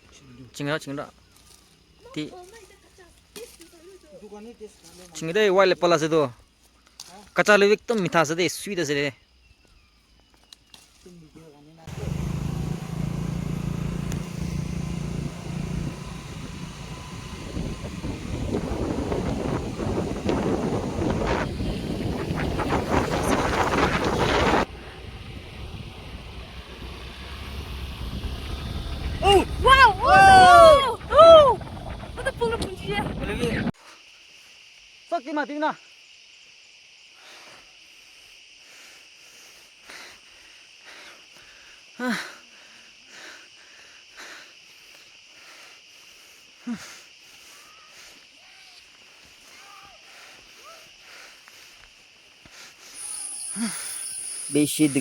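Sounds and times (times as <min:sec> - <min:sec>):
insects chirring: 0:00.0 - 0:55.0
motor engine humming: 0:11.9 - 0:33.7
wind noise: 0:15.2 - 0:33.7.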